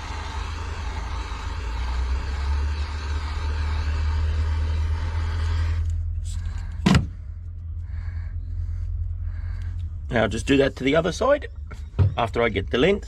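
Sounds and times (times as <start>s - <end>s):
heat gun running: 0.0s - 6.0s.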